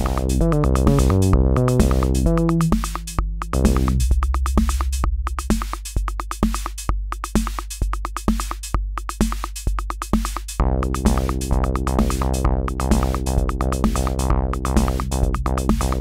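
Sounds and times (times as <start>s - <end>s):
synth bass line: 0.0s - 6.1s
rapid hi-hat ticks: 0.0s - 16.0s
steady kick drum: 0.0s - 16.0s.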